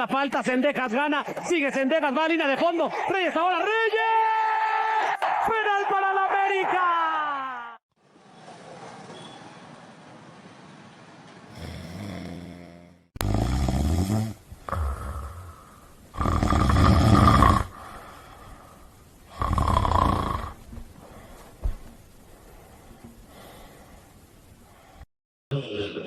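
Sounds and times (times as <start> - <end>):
loud snoring: 11.5 - 18.0, 19.3 - 20.6.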